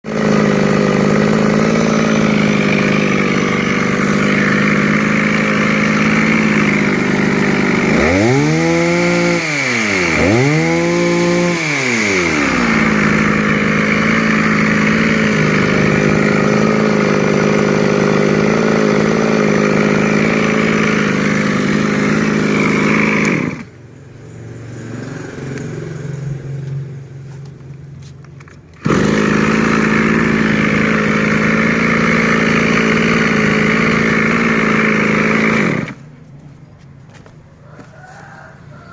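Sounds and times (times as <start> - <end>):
brush cutter engine running: 0.0 - 23.8, 28.3 - 36.2.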